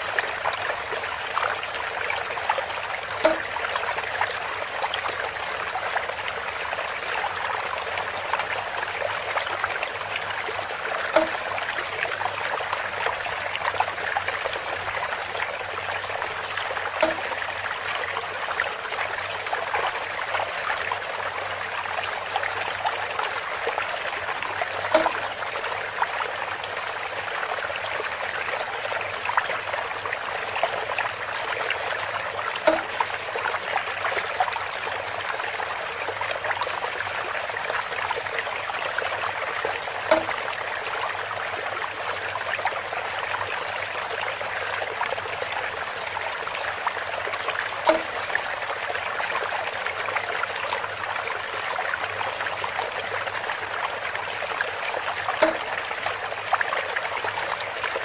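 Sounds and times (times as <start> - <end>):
water trickling through bamboo spout: 0.0 - 58.0
louder drip or tap: 1.8 - 4.4, 8.3 - 13.2, 14.8 - 18.0, 24.2 - 25.6, 32.0 - 33.6, 40.0 - 40.6, 47.8 - 48.6, 55.3 - 56.1.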